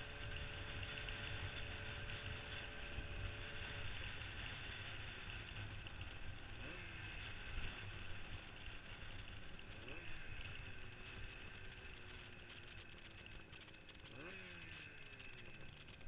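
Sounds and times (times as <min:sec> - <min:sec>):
motorcycle engine running: 0:00.0 - 0:16.0
wind and road noise: 0:00.0 - 0:16.0.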